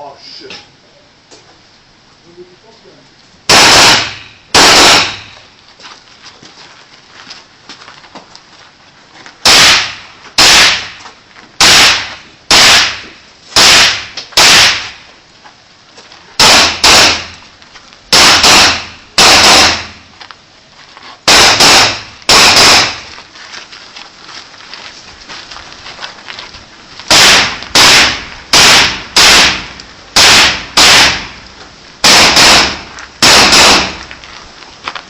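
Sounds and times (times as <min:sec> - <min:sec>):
rifle shots with echo: 0:03.5 - 0:05.4, 0:09.5 - 0:11.0, 0:11.6 - 0:13.0, 0:13.6 - 0:15.0, 0:16.4 - 0:17.4, 0:18.1 - 0:20.1, 0:21.3 - 0:23.1, 0:27.1 - 0:31.4, 0:32.0 - 0:34.1.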